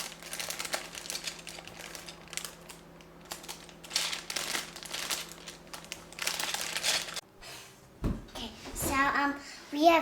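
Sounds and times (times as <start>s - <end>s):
plastic bag crinkling: 0.0s - 7.2s.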